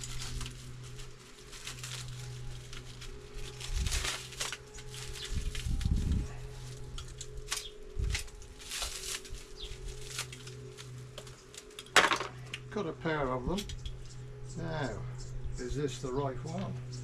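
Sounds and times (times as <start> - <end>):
packaging rustling and crinkling: 0.0 - 12.6.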